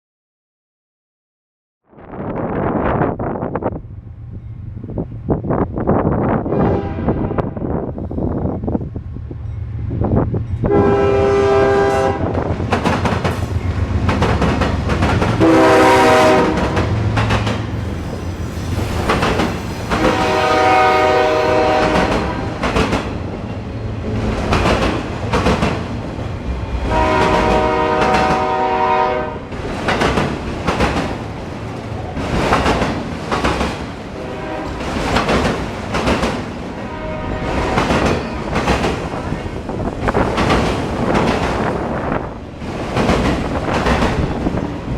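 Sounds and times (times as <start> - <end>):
locomotive air horn blasts: 6.5 - 7.6, 10.7 - 12.4, 15.4 - 17.0, 19.9 - 22.6, 26.8 - 29.5, 34.2 - 34.8, 36.8 - 37.8
train wheels clacking on rails: 12.4 - 28.8, 29.5 - 36.8, 37.4 - 44.9.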